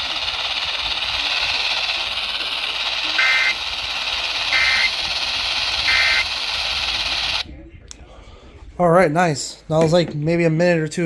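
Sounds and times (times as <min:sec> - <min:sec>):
two-tone data bursts: 0:00.0 - 0:07.4
radio static hiss: 0:00.0 - 0:07.5.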